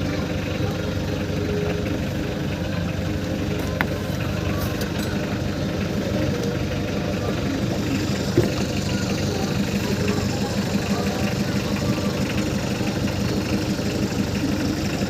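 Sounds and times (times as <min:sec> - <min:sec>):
diesel engine idling: 0:00.0 - 0:15.0.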